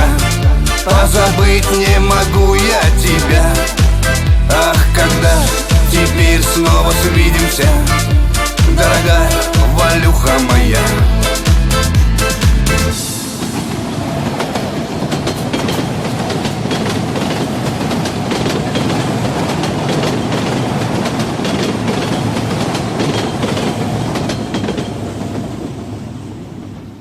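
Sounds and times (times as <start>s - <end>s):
train wheels clattering on rails: 12.9s - 26.2s.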